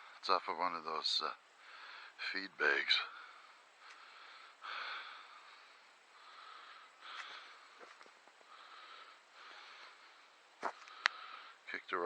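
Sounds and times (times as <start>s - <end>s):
man breathing hard: 1.6s - 2.2s, 3.1s - 11.7s
faint clicks: 10.7s - 11.2s.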